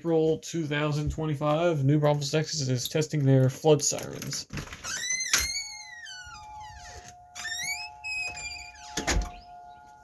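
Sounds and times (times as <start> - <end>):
warning siren two-pitch tone: 5.5 - 10.0.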